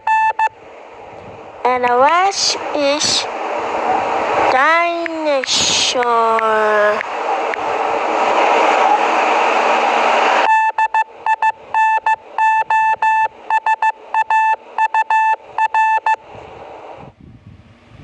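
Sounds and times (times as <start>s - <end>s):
morse code beeps: 0.0s - 0.6s, 10.4s - 16.2s
loud static hiss: 0.0s - 17.1s.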